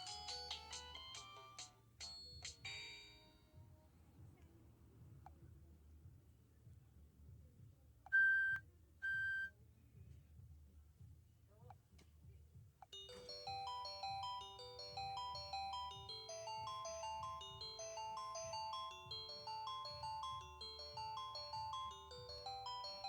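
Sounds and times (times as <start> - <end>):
chime-like ringtone melody: 0.0 - 3.5, 13.0 - 23.0
high phone beeps: 8.1 - 9.5.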